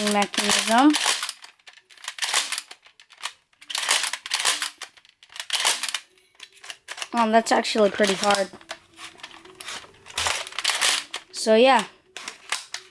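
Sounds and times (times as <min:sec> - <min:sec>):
toy blaster plastic clicking: 0:00.0 - 0:06.0.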